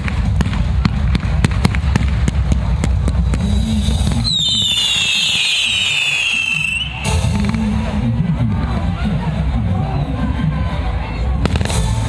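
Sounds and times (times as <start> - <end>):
firework bangs: 0.0 - 7.9, 11.4 - 12.0
firework whistle sliding down: 4.2 - 7.1.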